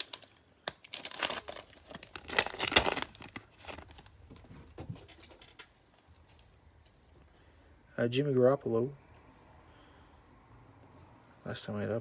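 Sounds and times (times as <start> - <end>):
card pack wrapper tearing: 0.0 - 4.0.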